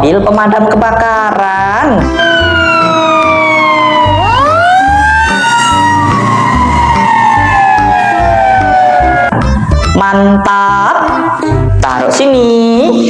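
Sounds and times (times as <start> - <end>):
background music with steady beat: 0.0 - 13.0
fire engine siren wailing: 2.0 - 9.9.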